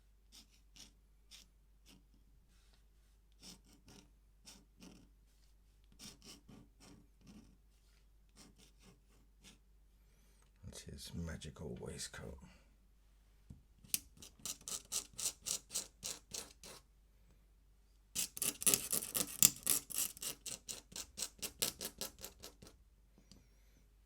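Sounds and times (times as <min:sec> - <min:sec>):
pen scratching on paper: 0:00.3 - 0:05.2, 0:05.8 - 0:09.6, 0:13.9 - 0:16.9, 0:18.2 - 0:22.8.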